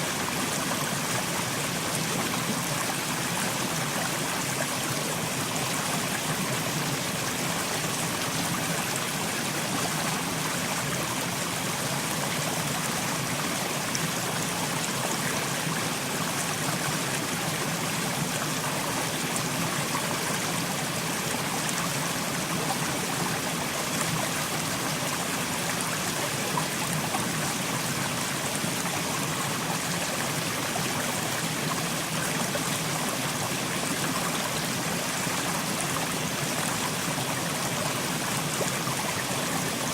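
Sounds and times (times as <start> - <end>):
stream running over rocks: 0.0 - 39.9.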